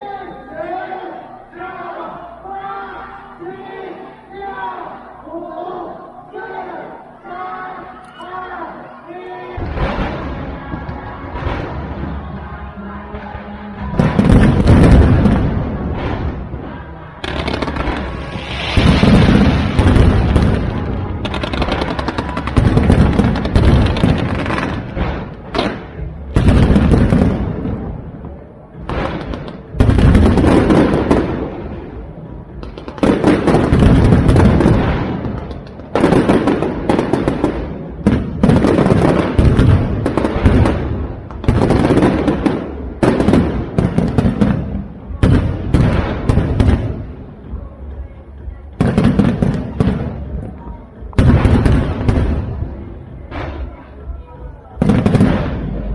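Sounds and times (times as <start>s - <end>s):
fireworks booms: 9.6s - 13.2s, 13.8s - 48.0s, 48.8s - 55.9s
crackling firework bursts: 13.9s - 47.6s.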